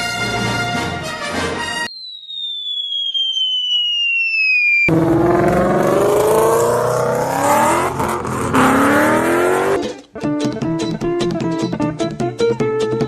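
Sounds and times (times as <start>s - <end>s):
high whistle falling in pitch: 1.8s - 7.7s
car engine revving: 4.9s - 9.9s.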